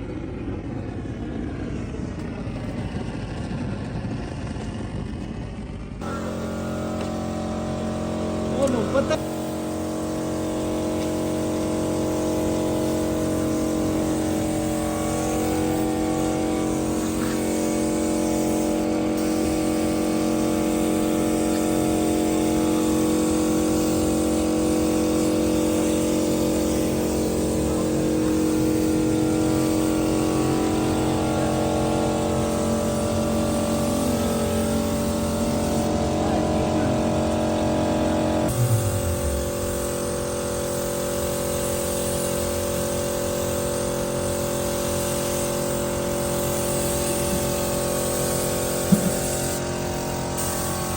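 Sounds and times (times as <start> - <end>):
car engine running steadily: 1.7 - 40.8.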